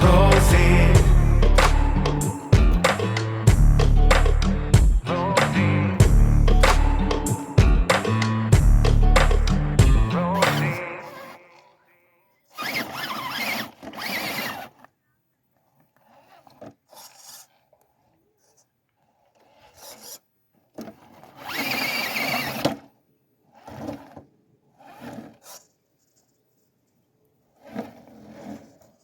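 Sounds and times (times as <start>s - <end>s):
small electric motor whining: 12.5s - 14.9s, 21.0s - 22.8s.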